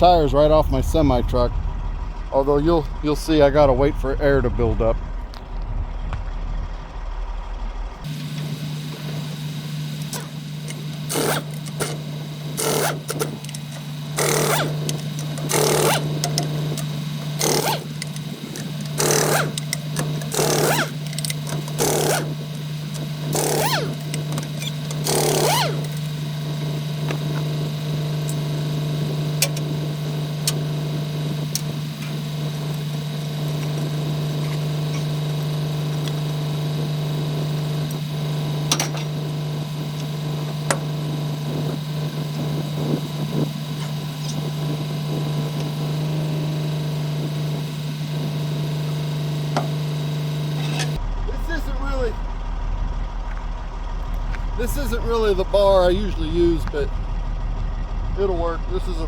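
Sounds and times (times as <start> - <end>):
truck engine idling: 0.0 - 42.5, 43.5 - 59.0.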